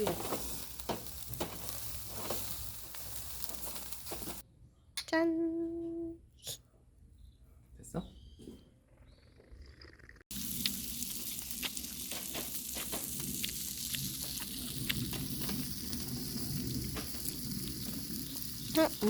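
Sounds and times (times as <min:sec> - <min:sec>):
meat sizzling on a grill: 0:00.0 - 0:04.4, 0:10.3 - 0:19.0.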